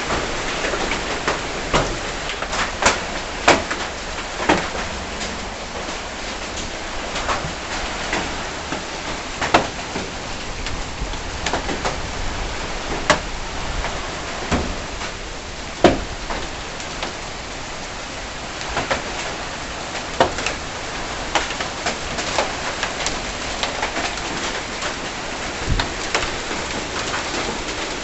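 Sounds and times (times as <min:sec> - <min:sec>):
hailstones knocking hard surfaces: 0:00.0 - 0:12.0, 0:18.6 - 0:28.0
hiss of rain and hail: 0:00.0 - 0:28.0.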